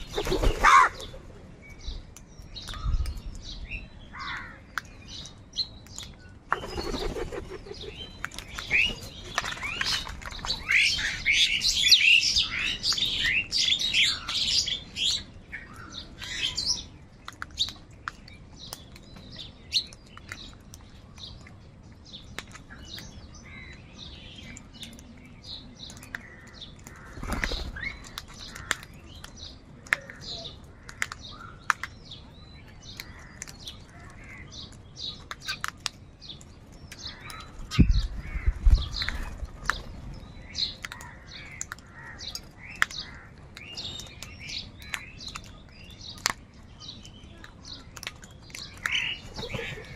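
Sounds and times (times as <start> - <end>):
crows calling: 0.6 - 1.1, 4.1 - 4.6, 28.4 - 29.0, 40.9 - 43.4.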